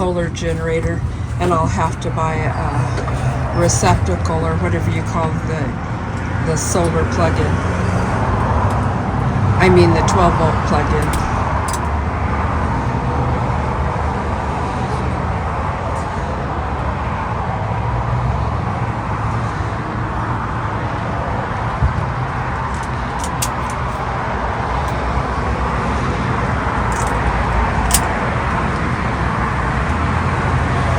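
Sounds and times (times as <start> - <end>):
vehicle rumble and hiss: 0.0 - 30.9.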